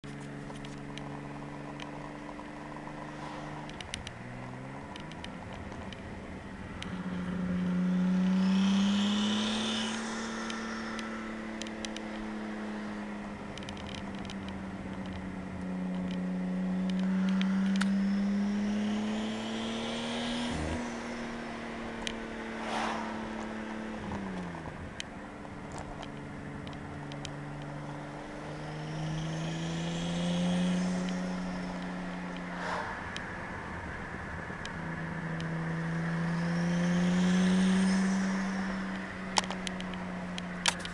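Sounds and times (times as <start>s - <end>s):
car engine under load: 0.0s - 40.9s
high-pitched engine noise: 1.0s - 5.1s, 6.5s - 14.4s, 16.0s - 25.0s, 27.8s - 39.9s.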